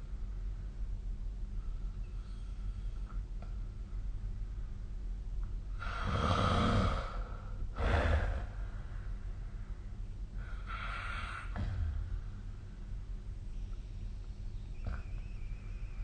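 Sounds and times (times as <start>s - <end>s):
person snoring: 5.8s - 8.6s.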